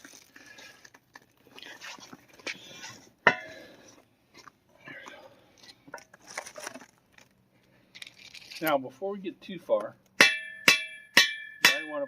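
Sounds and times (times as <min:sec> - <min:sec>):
metal parts tapping and scraping: 0:07.9 - 0:08.7
hammer striking metal: 0:10.2 - 0:12.0.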